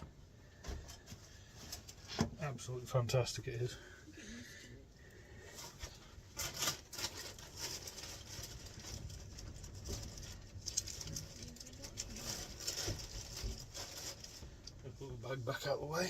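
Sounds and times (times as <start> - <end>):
bag rustling and crinkling: 5.5 - 14.7.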